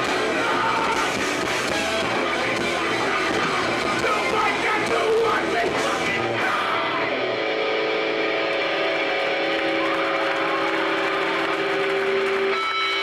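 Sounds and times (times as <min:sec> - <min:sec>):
live rock band playing: 0:00.0 - 0:13.0
electric guitar notes ringing: 0:06.6 - 0:13.0.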